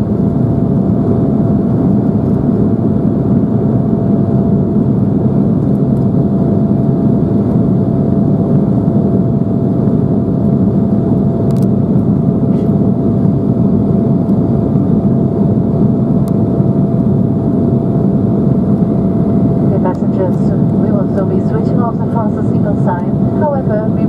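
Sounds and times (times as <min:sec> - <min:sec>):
airliner cabin roar: 0:00.0 - 0:24.0
steady hum on one note: 0:10.4 - 0:24.0.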